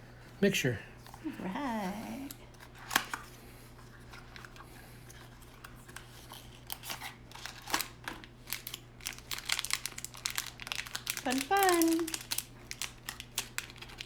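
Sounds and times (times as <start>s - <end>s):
packaging crinkling: 5.2s - 14.0s.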